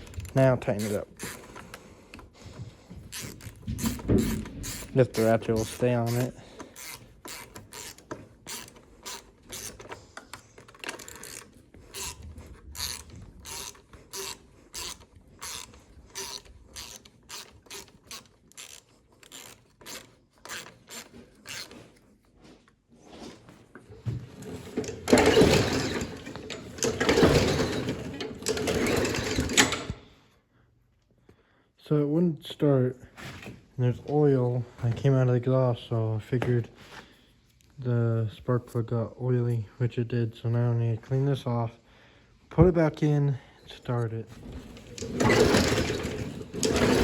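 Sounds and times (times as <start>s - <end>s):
socket ratchet clicking: 3.1s - 10.0s, 10.6s - 21.8s.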